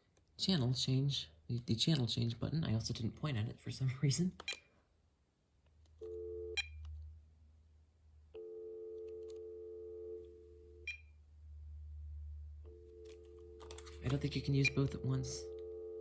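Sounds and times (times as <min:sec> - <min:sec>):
phone dial tone: 0:06.0 - 0:06.8, 0:08.4 - 0:10.9, 0:12.7 - 0:16.0.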